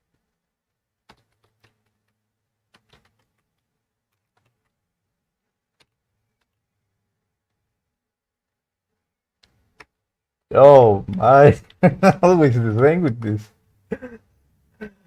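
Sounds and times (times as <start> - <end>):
computer keyboard clicks: 2.7 - 3.4.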